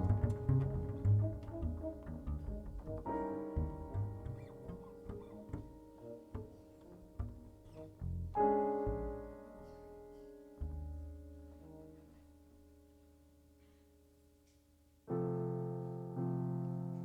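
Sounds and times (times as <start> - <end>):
double bass: 0.0 - 13.4
jazz piano: 0.0 - 17.0.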